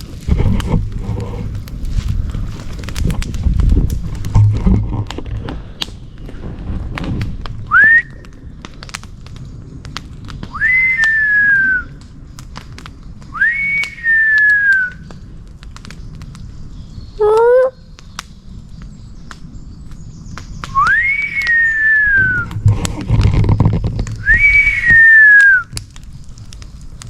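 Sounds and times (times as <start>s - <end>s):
campfire crackling: 0.0s - 27.0s
animal whistled calls: 10.5s - 12.0s, 13.3s - 15.1s, 20.6s - 22.6s, 24.2s - 25.7s.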